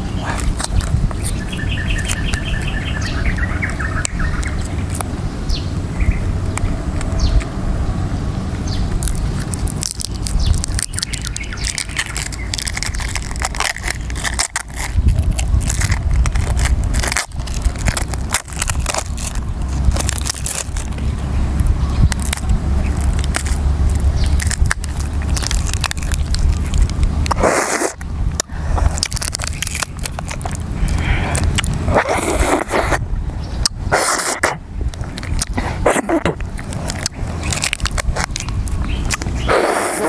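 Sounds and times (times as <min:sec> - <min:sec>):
small bird chirping trill: 0:00.0 - 0:07.5, 0:08.6 - 0:15.9, 0:20.8 - 0:27.3, 0:37.0 - 0:40.0
sharp clicks and crunches: 0:00.0 - 0:07.6, 0:08.5 - 0:40.0
steady low rumble: 0:00.0 - 0:39.8.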